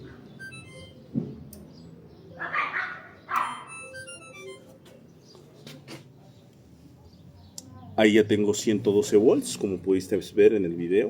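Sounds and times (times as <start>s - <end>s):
dog barking: 2.4s - 3.8s.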